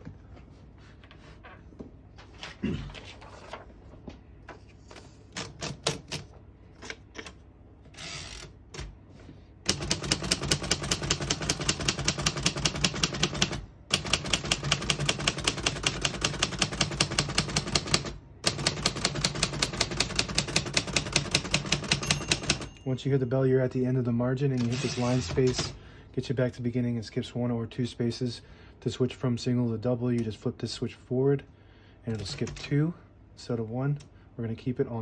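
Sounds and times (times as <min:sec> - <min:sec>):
typewriter key strikes: 0:09.7 - 0:22.7.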